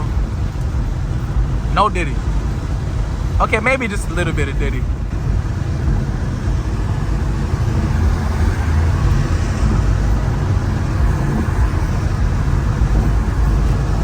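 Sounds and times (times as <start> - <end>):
car engine and tyre drone: 0.0 - 14.0
water hiss from wet road: 0.1 - 14.0.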